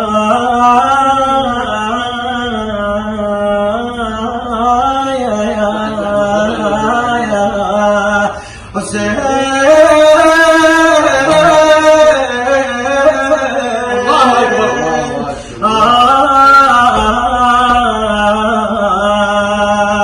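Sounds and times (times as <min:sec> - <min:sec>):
man chanting wordless sighs: 0:08.3 - 0:08.8, 0:15.2 - 0:15.6.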